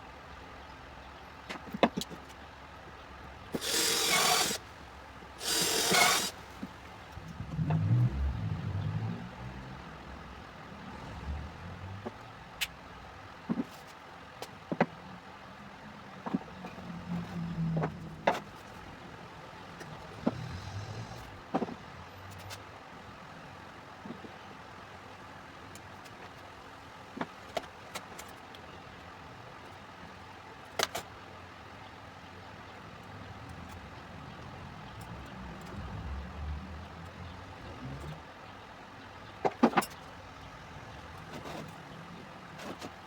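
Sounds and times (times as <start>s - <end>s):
wood and tools knocking: 3.6s - 4.6s, 5.4s - 6.7s.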